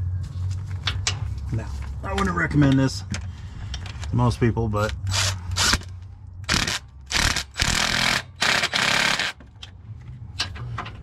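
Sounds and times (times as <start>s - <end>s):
power wrench bursts: 6.5s - 9.4s.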